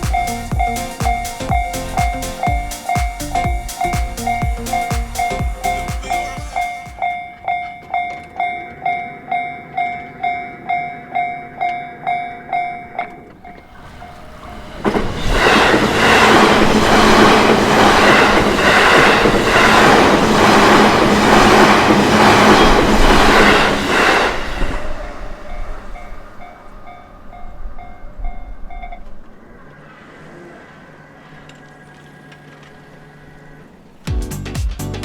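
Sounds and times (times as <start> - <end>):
level crossing warning bell: 0.0 - 14.8, 21.6 - 29.1
train wheels clattering over rails: 13.4 - 26.1.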